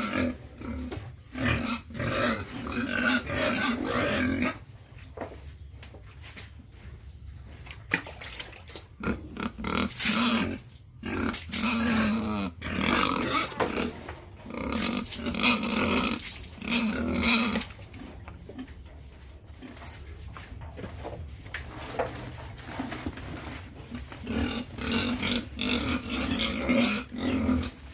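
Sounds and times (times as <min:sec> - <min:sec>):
pigs grunting: 0:00.0 - 0:04.6, 0:08.9 - 0:18.8, 0:22.0 - 0:27.9.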